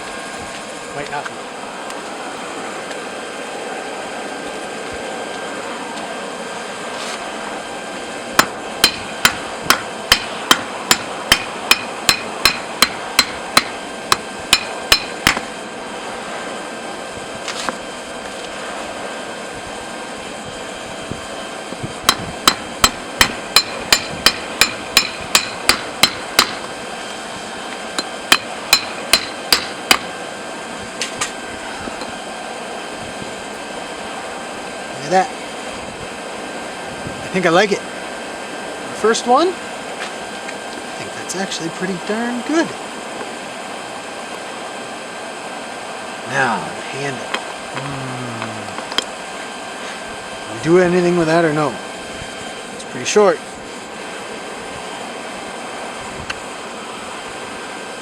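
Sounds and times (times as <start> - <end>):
hammer striking metal on anvil: 8.4 - 15.4, 22.1 - 26.6, 28.0 - 30.1.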